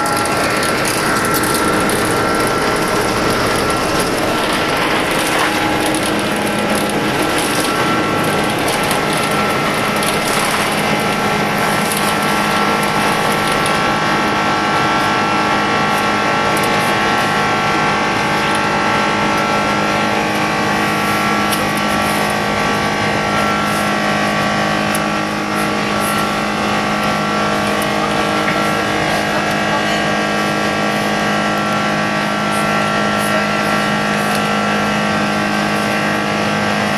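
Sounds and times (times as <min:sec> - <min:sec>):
engine whining tones: 0:00.0 - 0:36.9
jet engines roaring in cabin: 0:00.0 - 0:36.9.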